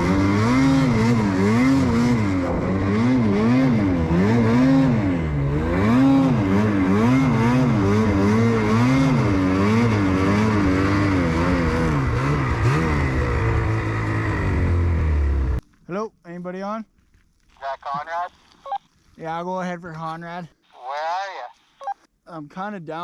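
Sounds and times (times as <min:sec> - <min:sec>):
snowmobile engine revving: 0:00.0 - 0:15.6.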